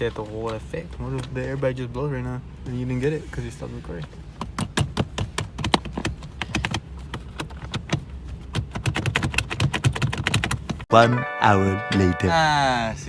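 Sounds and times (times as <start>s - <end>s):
rapid sharp clicks and taps: 4.4s - 10.9s.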